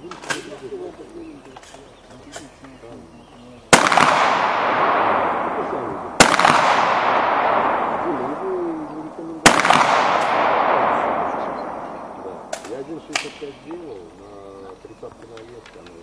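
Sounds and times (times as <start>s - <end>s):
shotgun shots echoing: 3.7s - 13.8s.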